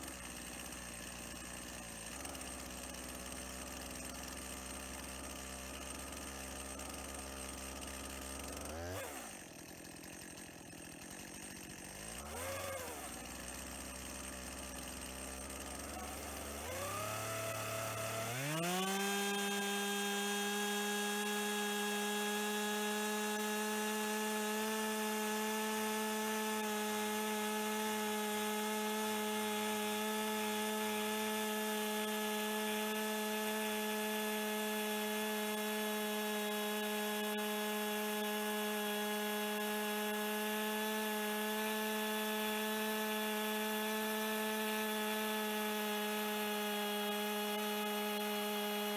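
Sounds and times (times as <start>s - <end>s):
chainsaw revving and cutting log: 0.0s - 48.9s.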